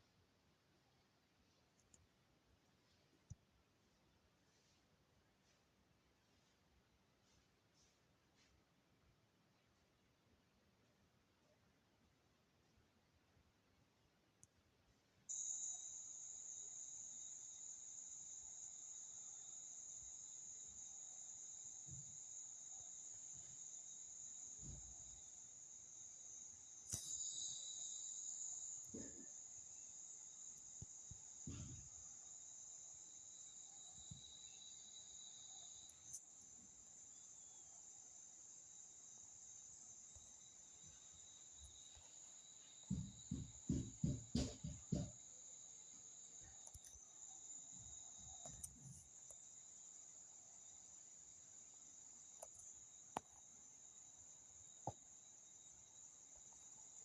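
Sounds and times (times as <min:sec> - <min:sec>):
crickets chirping: 0:15.2 - 0:57.0
insects chorus: 0:15.3 - 0:57.0.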